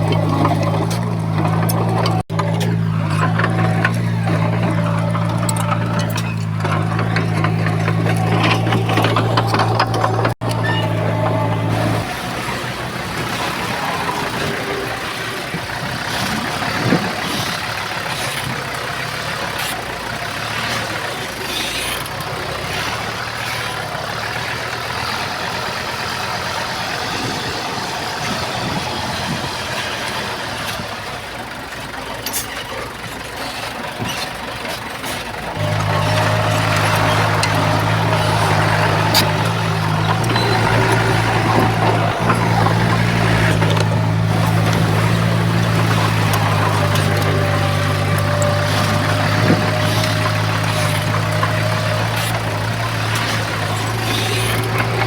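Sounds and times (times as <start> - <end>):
metal clanks and knocks: 0.0 - 12.1, 35.1 - 55.0
heavy machinery engine running: 0.0 - 55.0.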